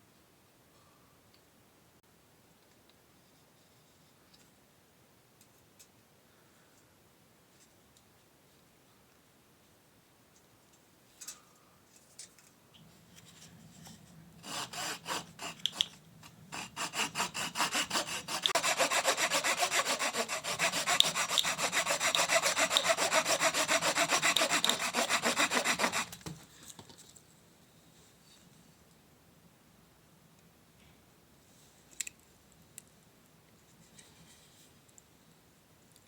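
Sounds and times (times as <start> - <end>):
hand saw cutting wood: 14.4 - 26.2.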